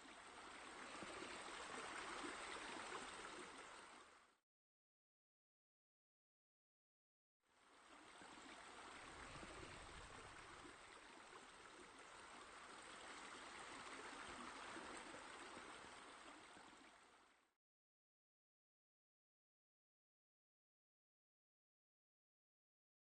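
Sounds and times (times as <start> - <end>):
faint running water: 0.0 - 4.4, 7.5 - 17.6.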